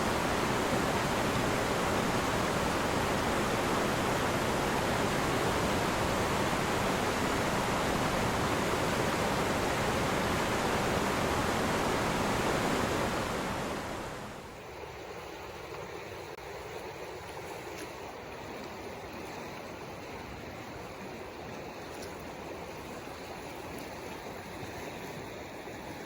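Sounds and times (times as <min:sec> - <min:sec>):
river water rushing: 0:00.0 - 0:26.0.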